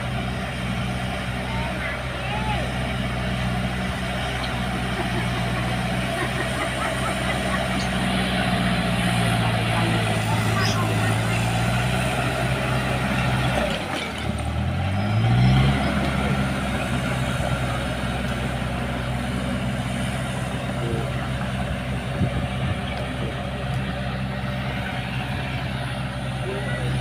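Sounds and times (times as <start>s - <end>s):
bulldozer diesel engine revving: 0.0s - 27.0s.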